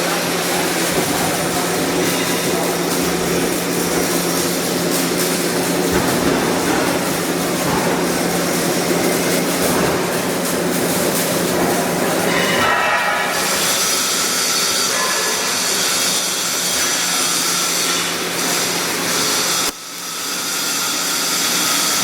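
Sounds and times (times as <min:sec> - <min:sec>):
welding arc hissing: 0:00.0 - 0:22.0
welding equipment hum: 0:00.0 - 0:22.0.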